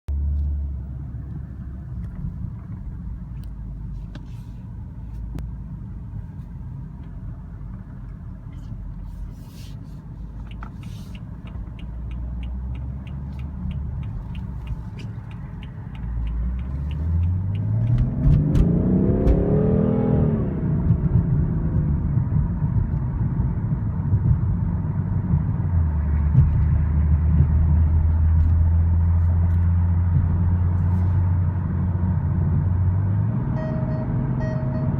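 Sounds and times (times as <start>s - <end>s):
car engine droning: 0.1s - 34.9s
even ticks: 10.4s - 18.3s.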